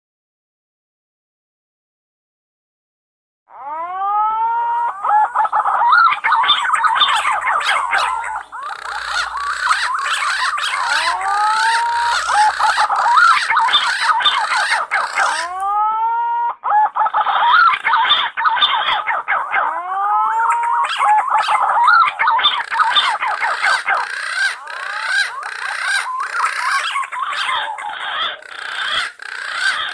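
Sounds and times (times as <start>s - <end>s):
pigeons singing: 4.2s - 15.8s, 16.4s - 29.9s
overlapping wavering whistles: 4.7s - 15.8s, 20.0s - 29.7s.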